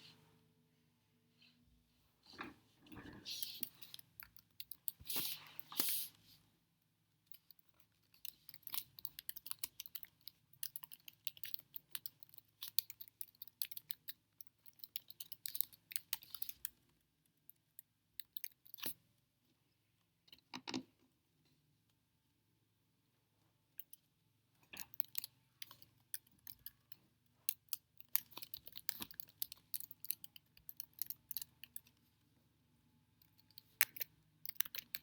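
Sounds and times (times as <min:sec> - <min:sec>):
chewing crunches and clicks: 0:07.3 - 0:16.8, 0:24.8 - 0:31.9, 0:33.2 - 0:35.0.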